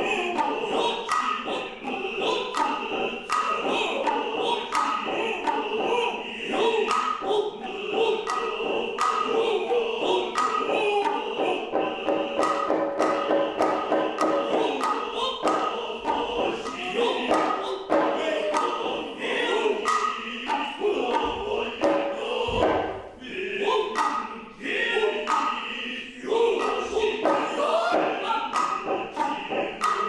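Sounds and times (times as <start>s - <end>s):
voices chanting: 0.0s - 30.0s
hand drum strikes: 8.0s - 19.1s, 24.0s - 24.3s, 26.6s - 30.0s.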